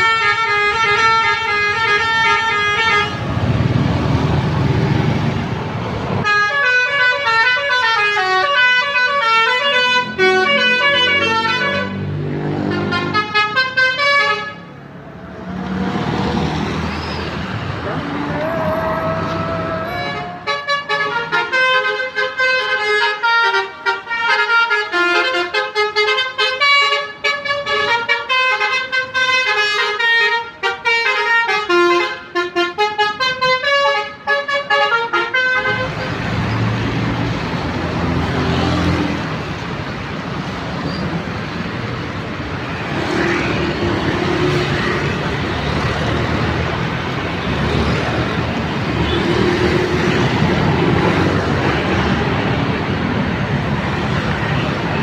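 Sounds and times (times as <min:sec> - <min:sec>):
musical bus horn melody: 0:00.0 - 0:03.3, 0:06.2 - 0:12.0, 0:12.6 - 0:14.8, 0:17.9 - 0:36.1
road noise: 0:00.0 - 0:55.0.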